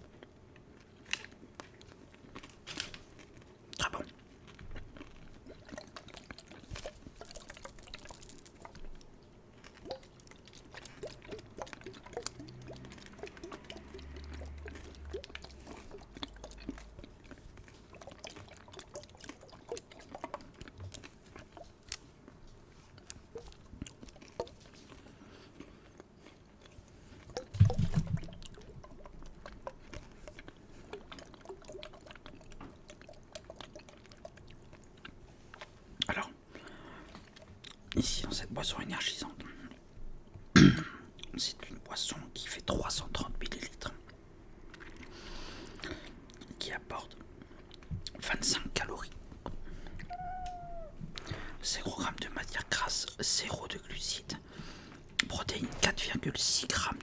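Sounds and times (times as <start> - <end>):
liquid drips and trickles: 4.6 - 25.3, 26.6 - 40.4.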